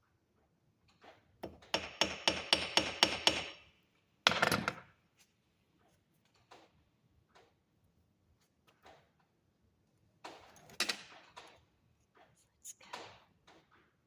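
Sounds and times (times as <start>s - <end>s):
hammer tapping copper wire: 1.4s - 3.6s.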